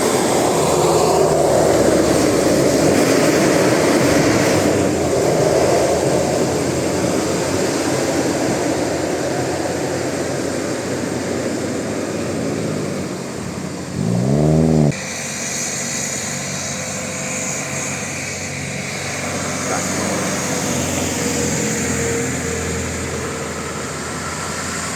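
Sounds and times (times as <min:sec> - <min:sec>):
bus engine and road noise: 0:00.0 - 0:24.9
loud horn blast: 0:13.9 - 0:15.0.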